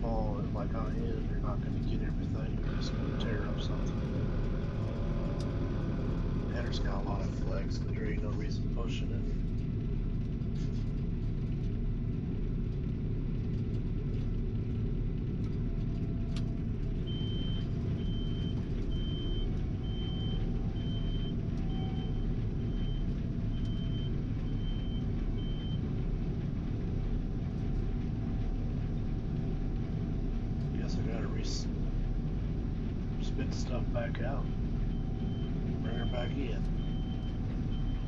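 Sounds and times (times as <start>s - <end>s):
combine harvester rumbling: 0.0s - 38.0s
electronic warning beeper: 34.9s - 38.0s.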